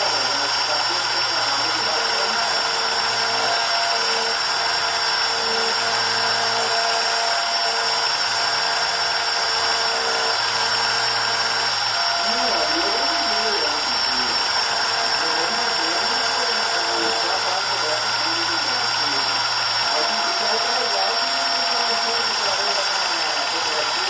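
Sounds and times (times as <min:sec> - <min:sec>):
engraving machine whining: 0:00.0 - 0:24.0
low machine tones: 0:00.0 - 0:24.0.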